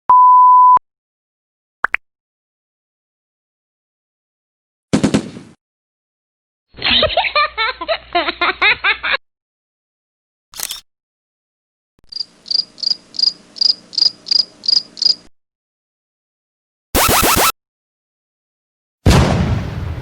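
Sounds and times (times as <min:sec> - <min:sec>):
crickets chirping: 0:12.1 - 0:15.3.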